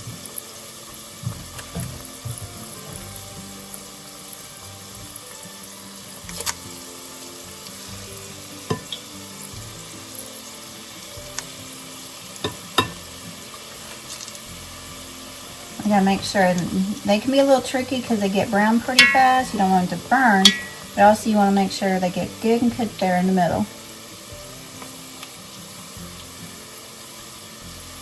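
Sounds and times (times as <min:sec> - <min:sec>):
food deep-frying in oil: 0:00.0 - 0:28.0.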